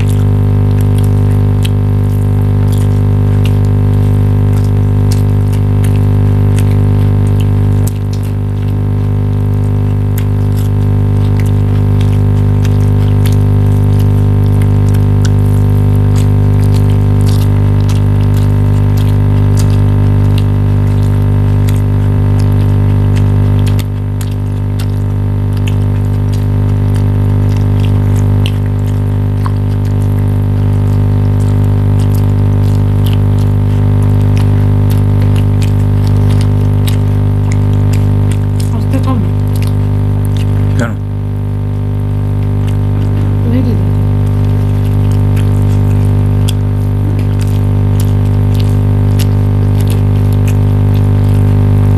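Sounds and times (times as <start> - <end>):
loud droning hum: 0.0 - 51.9.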